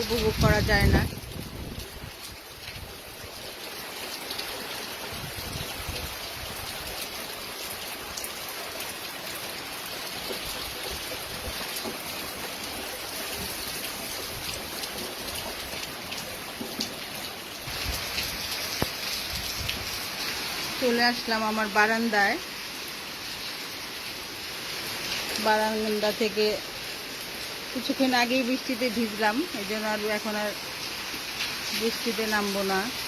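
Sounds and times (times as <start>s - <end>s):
heavy rain falling: 0.0s - 33.0s
sharp raindrop hits: 10.1s - 20.5s.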